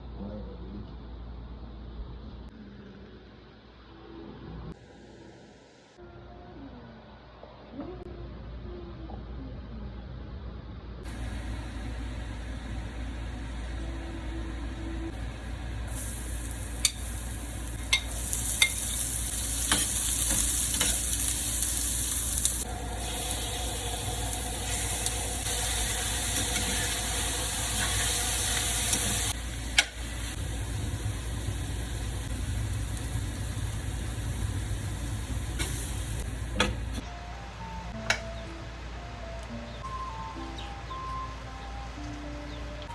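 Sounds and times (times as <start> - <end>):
food sizzling in a pan: 15.2 - 36.8.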